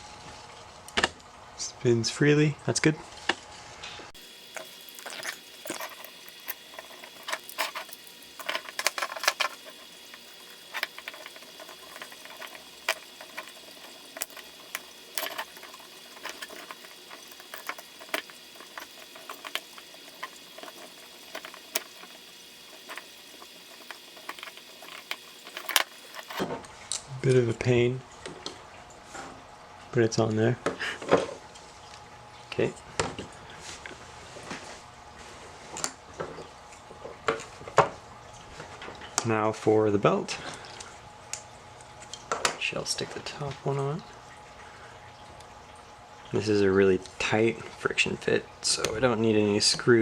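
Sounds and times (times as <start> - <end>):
parts clicking and tapping by hand: 4.2 - 26.5.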